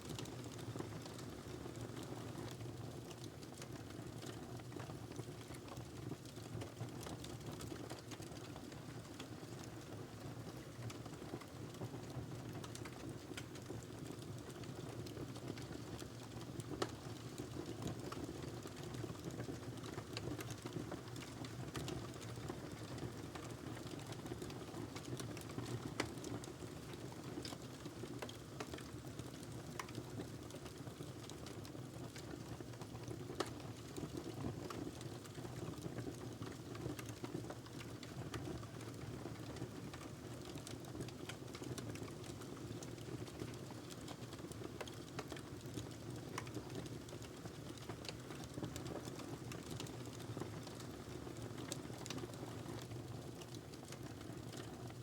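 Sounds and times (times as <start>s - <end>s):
logs crackling and popping: 12.6s - 22.5s, 27.4s - 31.4s, 34.2s - 54.9s.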